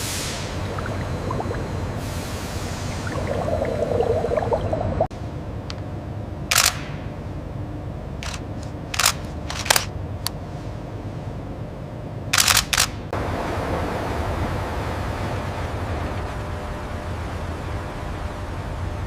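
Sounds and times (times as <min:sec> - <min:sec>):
steady low rumble: 0:00.0 - 0:19.0.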